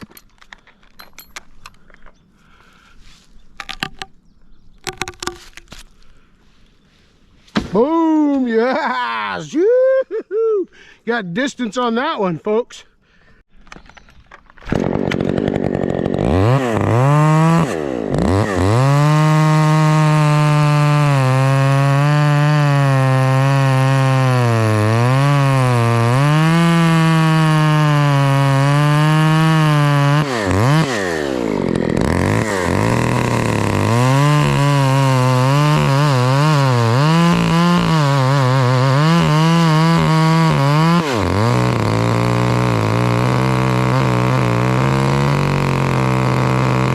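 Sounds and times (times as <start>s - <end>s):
chainsaw revving and cutting: 14.6s - 46.9s.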